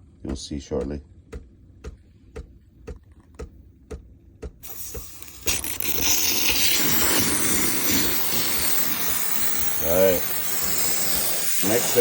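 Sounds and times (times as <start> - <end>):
espresso machine ticking: 4.4 - 12.0
steam wand hissing: 4.6 - 12.0.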